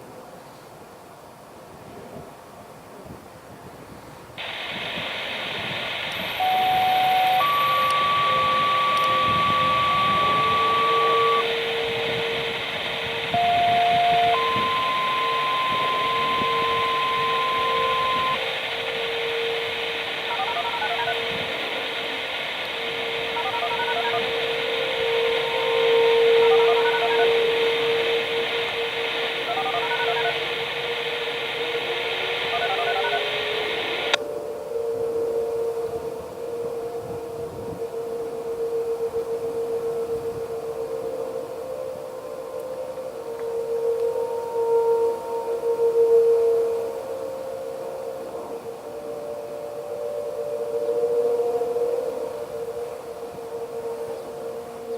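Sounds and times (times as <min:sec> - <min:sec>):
radio static hiss: 0:04.4 - 0:34.2
two-tone radio activation tones: 0:04.4 - 0:34.2
distant warning sirens: 0:04.4 - 0:54.9.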